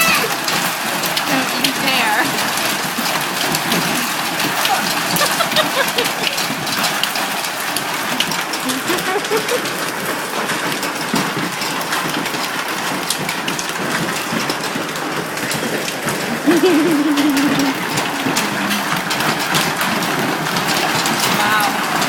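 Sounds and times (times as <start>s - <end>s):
hail clattering on hard surfaces: 0.0s - 22.0s
heavy rain hiss: 0.0s - 22.0s.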